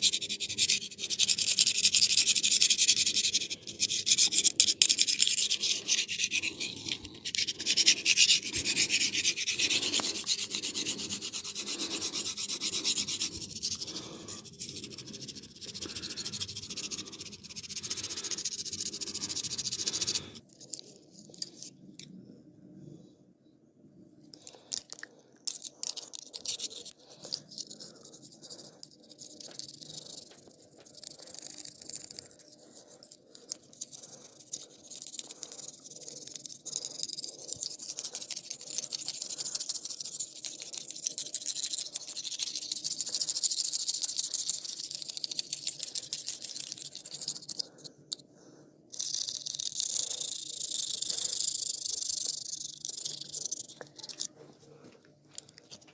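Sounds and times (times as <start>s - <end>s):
scratching and rubbing of hair: 0.0s - 21.8s, 25.5s - 47.8s.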